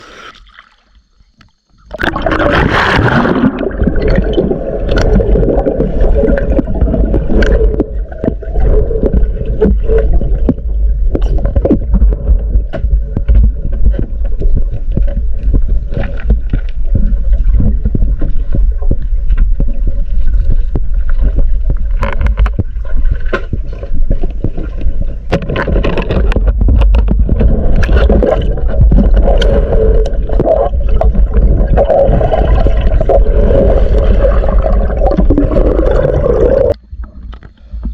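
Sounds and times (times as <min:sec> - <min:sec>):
water gurgling: 0:00.0 - 0:37.9
underwater water rumble: 0:01.0 - 0:37.9
underwater clicks: 0:01.4 - 0:37.9.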